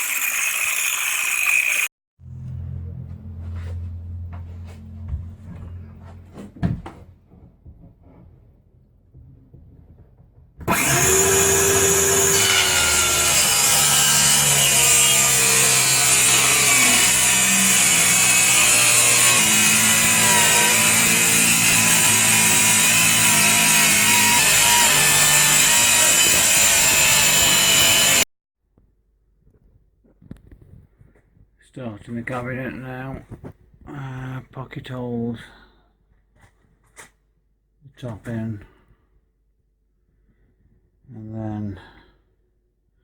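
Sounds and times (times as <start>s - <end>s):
power saw cutting wood: 0.0s - 1.9s, 10.6s - 28.3s.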